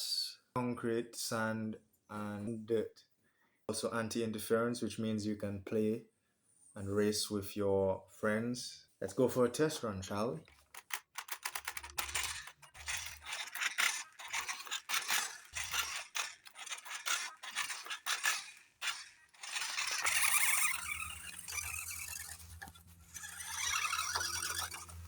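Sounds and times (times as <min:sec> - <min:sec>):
toy car tyres scraping ground: 0:09.1 - 0:25.0.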